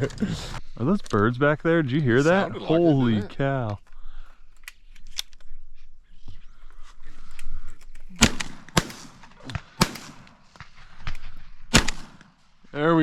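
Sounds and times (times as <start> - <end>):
shotgun shots echoing: 8.1 - 11.0, 11.7 - 12.6.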